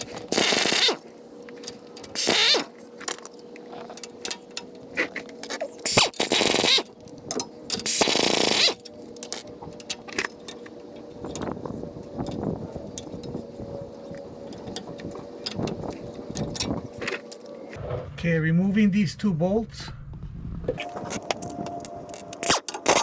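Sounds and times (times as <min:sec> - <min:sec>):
metal scraping: 0:00.0 - 0:18.3, 0:20.7 - 0:23.0
impact gun running: 0:00.2 - 0:01.0
metal tools clicking and knocking: 0:01.4 - 0:17.6.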